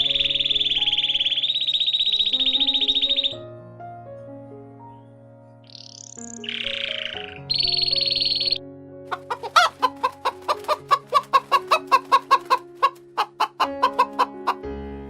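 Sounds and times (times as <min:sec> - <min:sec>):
soft background music: 0:00.0 - 0:15.0
chicken clucking: 0:09.1 - 0:14.6.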